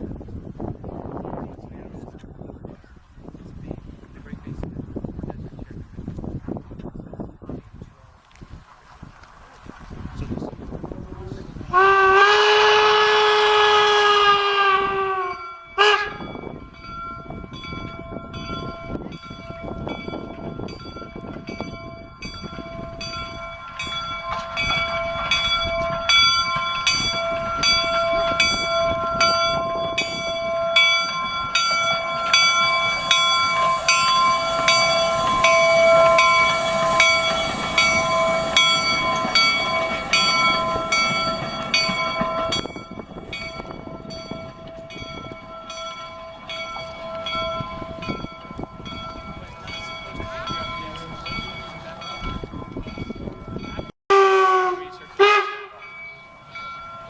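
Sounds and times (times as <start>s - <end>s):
locomotive bell ringing: 11.7s - 57.0s
high steam hiss: 31.9s - 42.6s.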